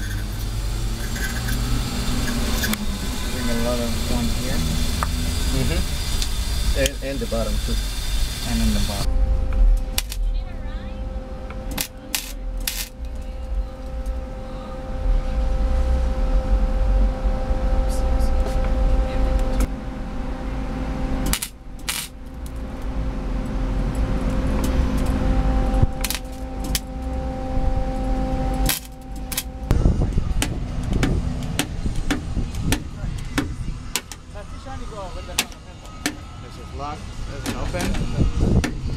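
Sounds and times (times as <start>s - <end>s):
welding arc crackling: 0.0s - 14.2s, 21.1s - 36.2s
welder hum: 0.0s - 38.9s.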